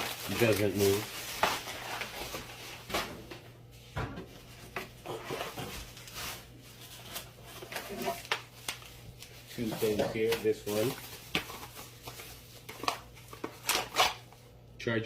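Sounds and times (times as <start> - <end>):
packaging rustling: 0.0 - 2.9, 5.2 - 14.3.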